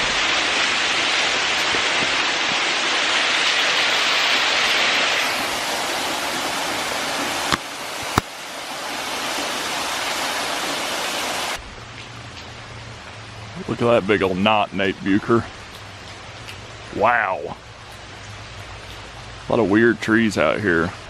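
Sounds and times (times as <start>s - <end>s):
small waterfall rushing: 0.0s - 21.0s.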